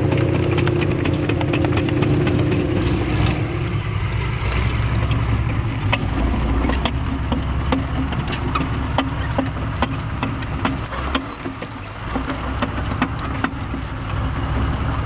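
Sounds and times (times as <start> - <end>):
tank diesel engine rumbling: 0.0 - 15.0
sharp metallic clicks: 6.7 - 13.6.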